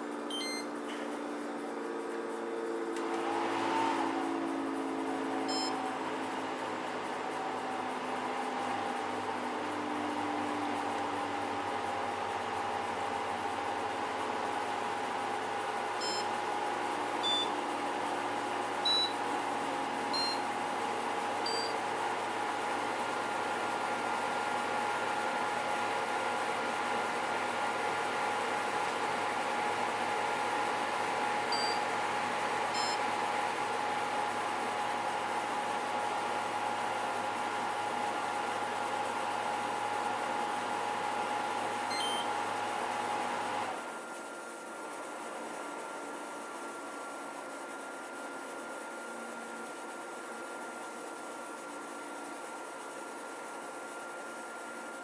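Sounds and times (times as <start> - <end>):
quiet steady whir: 0.0 - 3.2, 3.8 - 8.1, 16.0 - 19.3, 19.9 - 20.5, 21.4 - 21.9, 31.4 - 31.9, 32.7 - 33.1, 41.8 - 42.3
air conditioner humming and whining: 0.0 - 55.0
short electronic beeps: 0.3 - 0.7, 5.5 - 5.8, 16.0 - 16.3, 17.2 - 17.6, 18.8 - 19.2, 20.2 - 20.4, 21.5 - 21.8, 31.5 - 31.8, 32.8 - 33.0, 41.9 - 42.3.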